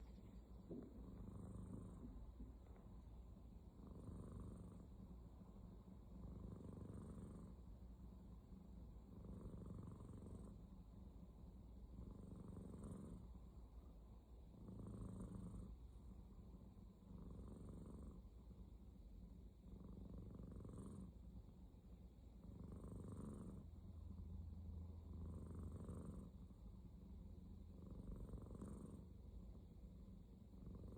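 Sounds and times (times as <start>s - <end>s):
cat snoring: 0.0s - 2.8s, 3.8s - 5.2s, 6.1s - 7.7s, 9.0s - 10.8s, 11.9s - 13.5s, 14.5s - 16.1s, 17.0s - 18.3s, 19.6s - 21.3s, 22.4s - 24.2s, 25.0s - 26.6s, 27.5s - 29.3s, 30.4s - 30.9s.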